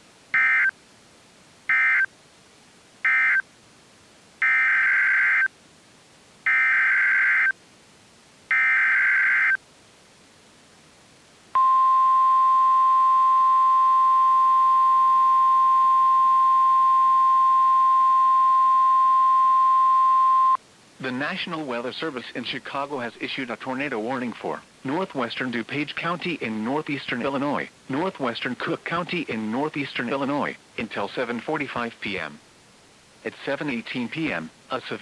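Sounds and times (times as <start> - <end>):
steady warning alarm tone: 8.5 - 9.6, 11.6 - 20.6.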